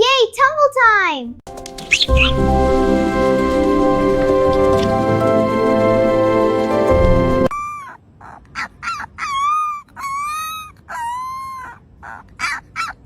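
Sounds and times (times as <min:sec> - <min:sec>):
music: 0:01.5 - 0:07.5
puppy whimpering and yelping: 0:07.6 - 0:13.0.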